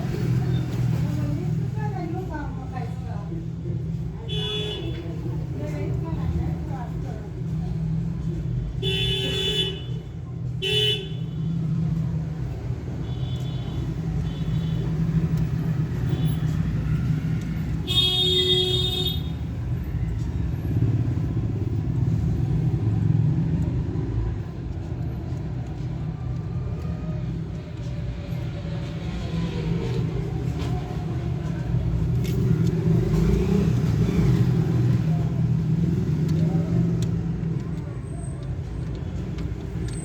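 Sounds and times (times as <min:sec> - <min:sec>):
traffic rumble: 0:00.0 - 0:40.0
vehicle horns honking: 0:17.8 - 0:19.3.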